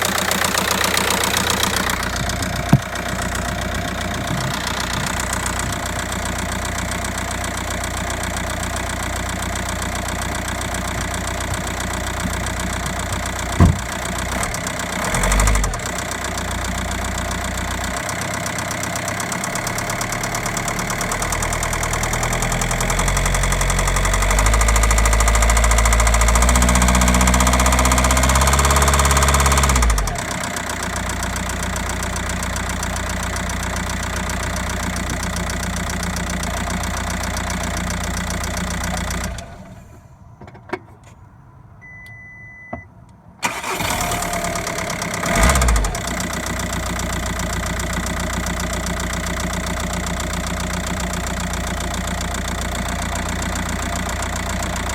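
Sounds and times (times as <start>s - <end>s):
diesel engine revving and idling: 0.0s - 40.3s, 43.4s - 54.9s
short beep: 41.8s - 42.9s.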